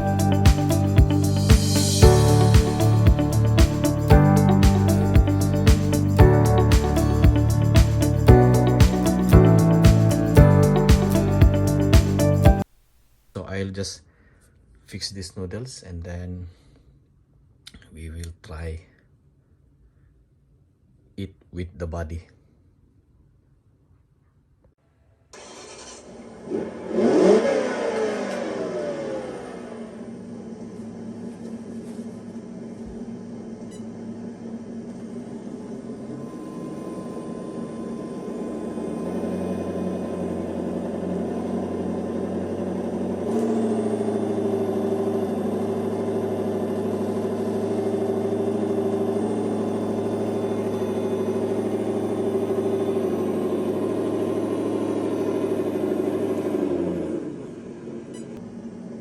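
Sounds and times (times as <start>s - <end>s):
electric motor whine: 35.5s - 57.3s.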